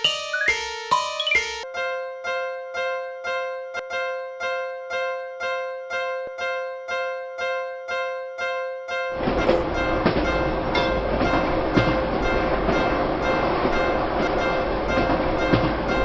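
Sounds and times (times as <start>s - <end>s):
electronic crossing bell tone: 0.0s - 1.6s
short falling melody: 0.0s - 1.6s.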